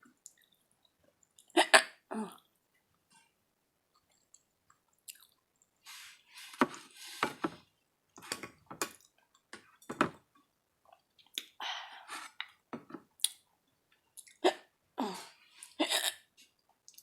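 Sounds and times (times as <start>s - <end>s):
mouth clicks and smacks: 3.9s - 5.7s, 13.2s - 13.4s
person chewing food: 3.9s - 5.7s.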